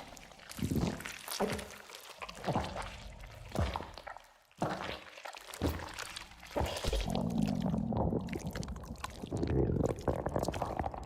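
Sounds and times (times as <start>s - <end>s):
wet gurgling with clicks: 0.0s - 11.0s
low gulp: 6.6s - 11.0s.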